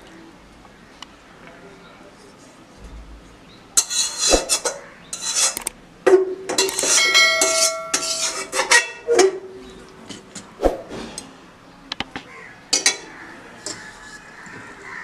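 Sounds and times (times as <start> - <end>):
metal dishes clattering and scraping: 3.8 - 11.3, 12.7 - 15.0
metal dish ringing: 6.1 - 9.4.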